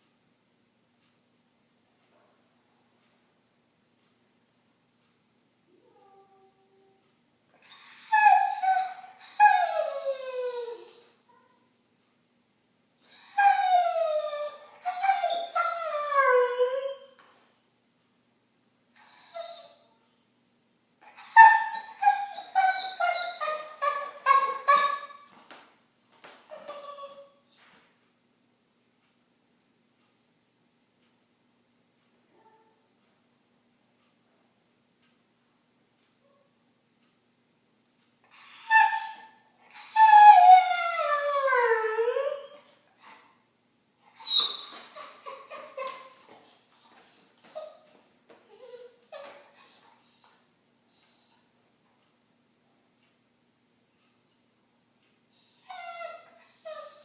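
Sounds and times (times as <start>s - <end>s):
dog whining and yelping: 7.6s - 11.5s, 13.0s - 17.5s, 19.0s - 20.0s, 21.0s - 25.5s, 26.5s - 27.5s, 38.2s - 43.4s, 44.1s - 51.5s, 55.4s - 57.0s
dog howling: 21.2s - 25.2s, 38.5s - 42.7s.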